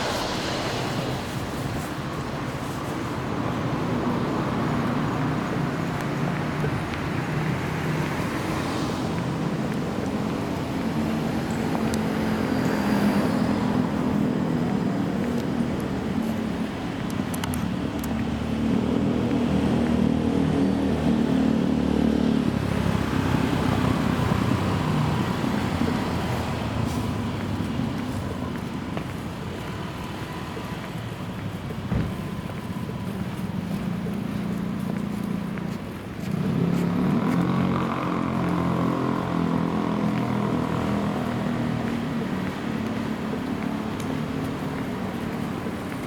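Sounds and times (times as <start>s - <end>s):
city street traffic: 0.0s - 46.0s
vehicle engine running close by: 32.6s - 46.0s.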